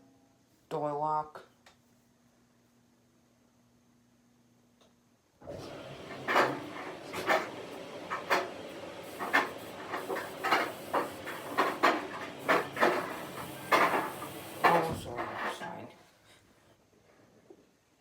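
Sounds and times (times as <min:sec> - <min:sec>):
water hissing into washing machine: 0:05.4 - 0:15.6.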